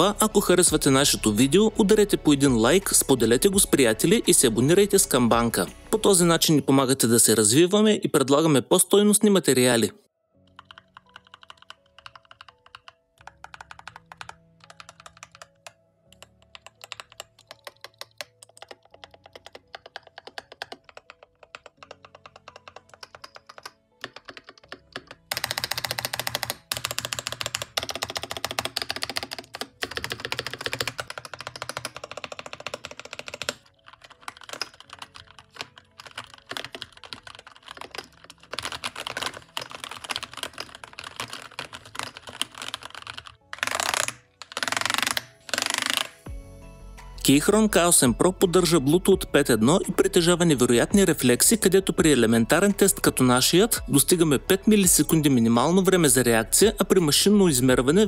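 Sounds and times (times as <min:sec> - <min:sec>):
mechanical keyboard typing: 0:10.4 - 0:46.3.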